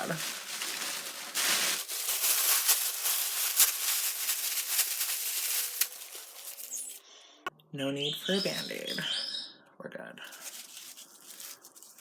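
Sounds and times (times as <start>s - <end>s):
objects rustling and rattling: 0.0s - 7.0s, 10.2s - 12.0s.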